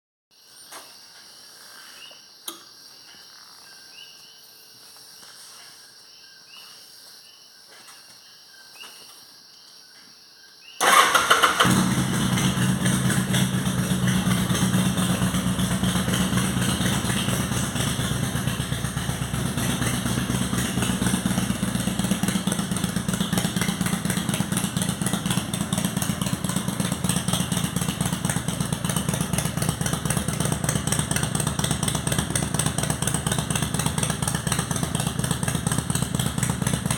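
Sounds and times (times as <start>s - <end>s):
motorcycle engine starting and running: 10.8s - 36.9s.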